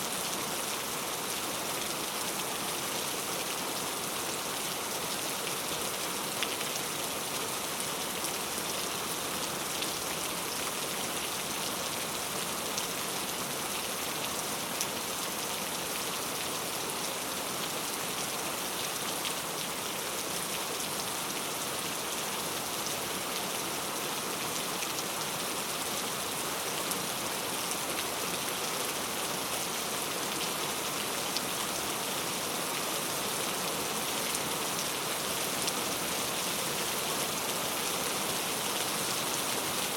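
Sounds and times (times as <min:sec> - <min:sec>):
heavy rain falling: 0:26.6 - 0:39.9.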